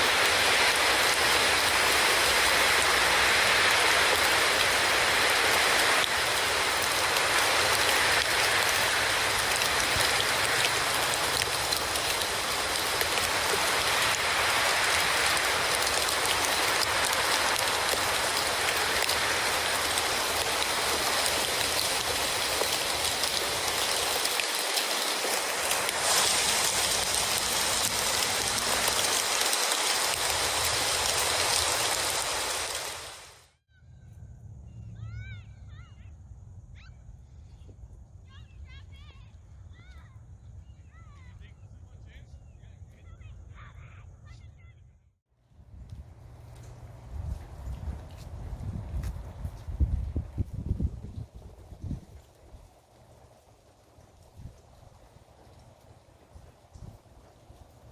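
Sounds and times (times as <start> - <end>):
steady rain hiss: 0.0 - 33.6, 45.5 - 57.9.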